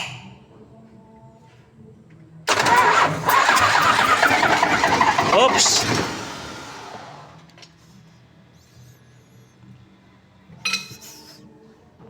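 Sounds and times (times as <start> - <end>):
diesel truck engine cranking: 2.5 - 7.5.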